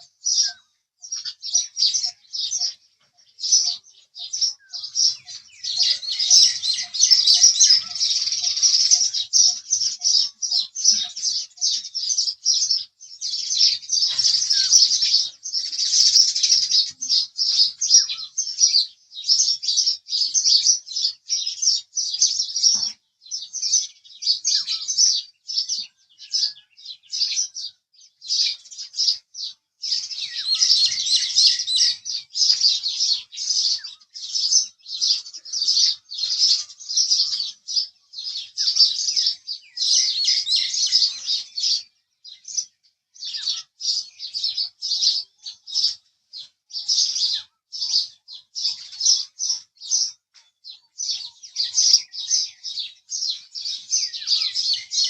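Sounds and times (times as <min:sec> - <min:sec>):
sparrows chirping: 0:00.0 - 0:55.0.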